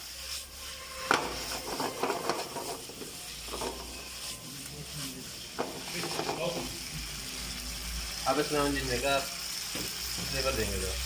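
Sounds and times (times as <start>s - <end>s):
chicken sizzling in a pan: 0.0s - 11.0s
spatula scraping and knocking pan: 0.3s - 4.4s, 5.6s - 6.7s.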